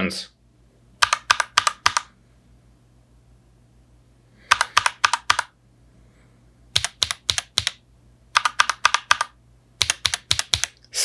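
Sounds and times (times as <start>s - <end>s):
mechanical keyboard typing clacks: 1.0s - 2.1s, 4.5s - 5.5s, 6.8s - 7.8s, 8.4s - 10.8s.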